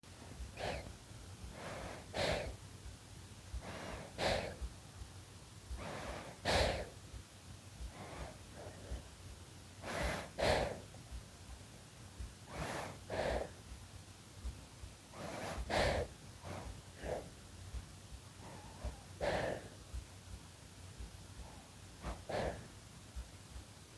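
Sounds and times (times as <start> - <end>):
baby breathing in sleep: 0.3 - 2.6, 3.5 - 4.7, 5.7 - 7.0, 7.8 - 9.1, 9.8 - 11.0, 12.4 - 13.7, 15.1 - 17.4, 18.4 - 19.9, 21.4 - 22.8.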